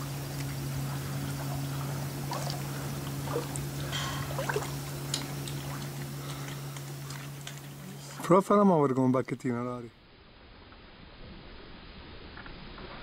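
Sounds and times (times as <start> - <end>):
small drips and clicks: 0.0 - 7.8
water trickling and splashing: 0.0 - 8.4
steady low hum: 0.0 - 13.0.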